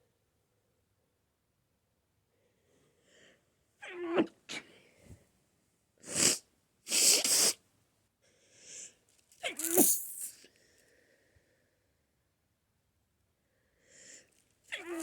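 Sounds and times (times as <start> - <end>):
person sneezing: 6.1 - 7.6, 9.4 - 10.3.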